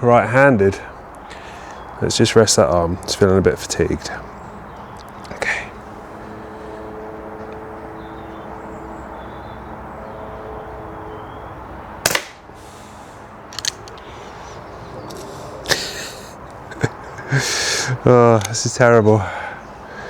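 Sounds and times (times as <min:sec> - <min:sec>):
steady background hum: 0:00.0 - 0:20.0
air pistol shot: 0:12.0 - 0:12.5
small clicks: 0:13.5 - 0:14.1.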